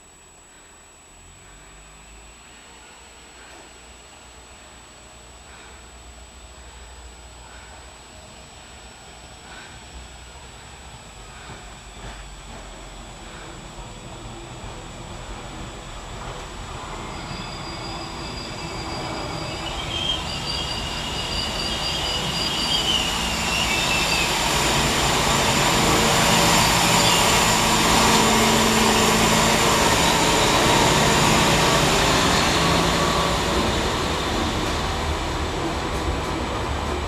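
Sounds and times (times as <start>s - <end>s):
diesel train engine: 0.0s - 37.0s
rail noise: 1.5s - 37.0s
high thin squeal: 17.0s - 34.2s.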